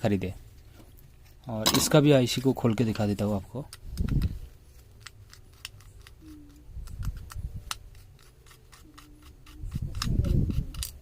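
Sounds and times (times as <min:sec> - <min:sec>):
small tools clicking and scraping: 0:00.8 - 0:11.0.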